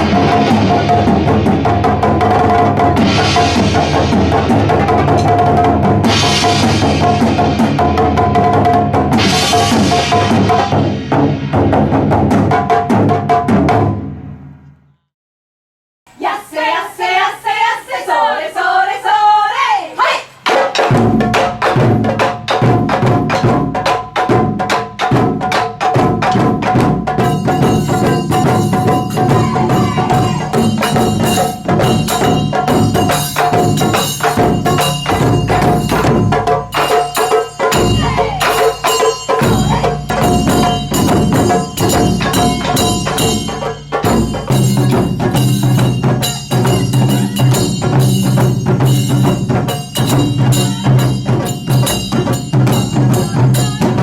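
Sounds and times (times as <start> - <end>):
taiko drums playing fast rhythm: 0.0 - 14.2, 20.4 - 54.0
held pitched tone: 27.5 - 31.8, 37.2 - 45.8
bright high ringing: 36.8 - 53.8.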